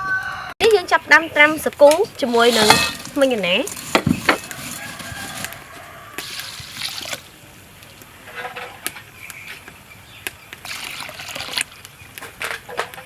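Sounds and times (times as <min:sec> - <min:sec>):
kitchen utensils clicking: 0:02.3 - 0:03.4
water pouring and trickling: 0:06.2 - 0:07.4, 0:10.6 - 0:11.9.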